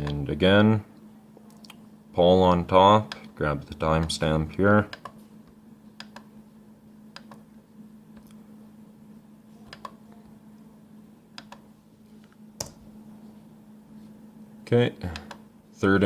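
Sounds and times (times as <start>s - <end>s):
low electrical hum: 0.0s - 16.0s
keyboard and mouse clicks: 6.0s - 6.3s, 7.1s - 7.4s, 9.7s - 10.0s, 11.4s - 11.6s.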